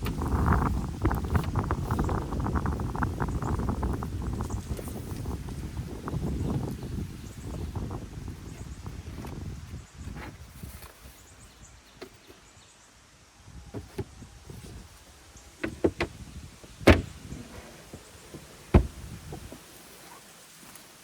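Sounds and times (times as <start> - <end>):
items being handled: 13.8 - 20.0
van door clunking: 15.6 - 19.6.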